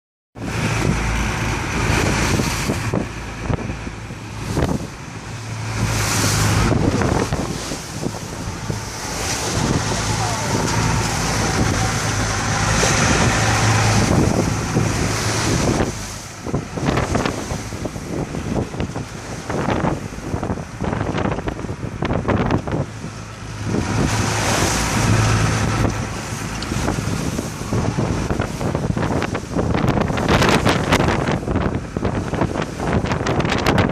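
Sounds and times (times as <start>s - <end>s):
low engine drone: 0.4s - 33.9s
rough surging waves: 0.4s - 33.9s
water splashing and slapping: 0.4s - 33.9s
wind buffeting microphone: 0.4s - 33.9s
hissing rush of water: 4.3s - 18.3s.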